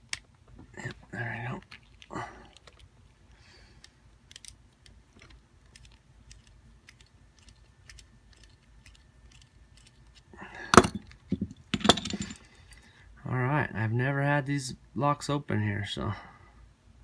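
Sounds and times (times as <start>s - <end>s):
metal clatter: 10.8s - 12.5s.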